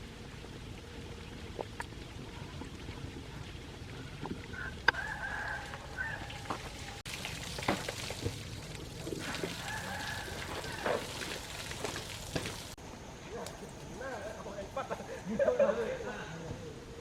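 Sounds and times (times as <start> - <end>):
outdoor background noise: 0.0 - 17.0
rooster crowing: 4.6 - 7.0, 9.2 - 11.4.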